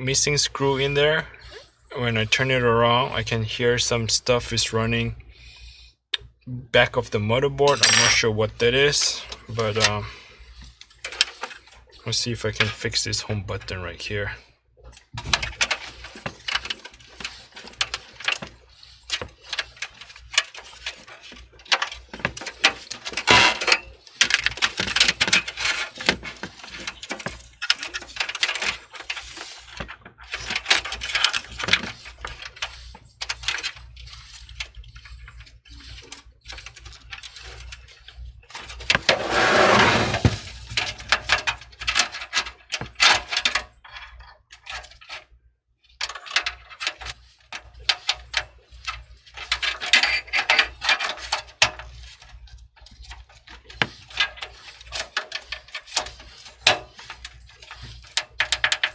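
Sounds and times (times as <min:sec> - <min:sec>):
plastic parts clicking and rattling: 0:14.8 - 0:39.1, 0:40.2 - 0:45.3, 0:46.0 - 0:58.9
loud scraping noise: 0:39.0 - 0:40.7.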